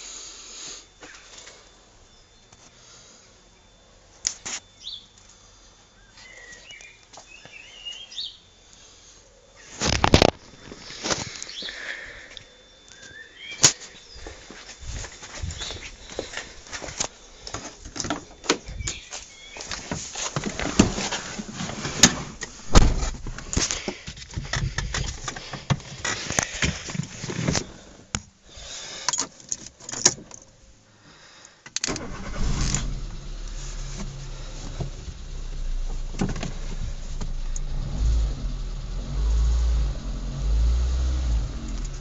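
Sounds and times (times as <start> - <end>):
handling clicks and knocks: 29.1 - 30.5
car engine starting and idling: 31.8 - 42.0.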